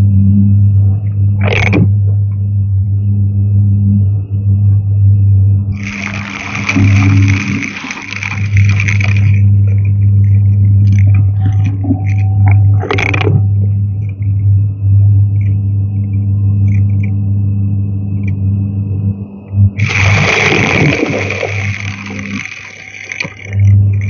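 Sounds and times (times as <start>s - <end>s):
rushing air hiss: 5.8s - 9.4s
vacuum cleaner running: 5.8s - 9.8s, 19.8s - 23.6s.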